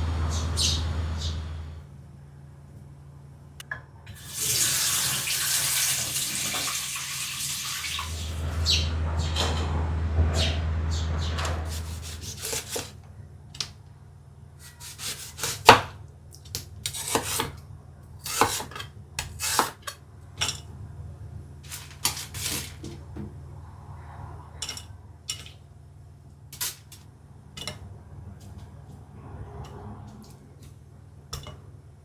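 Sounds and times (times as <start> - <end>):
kitchen utensils clicking and tapping: 24.6 - 25.6, 27.6 - 27.8.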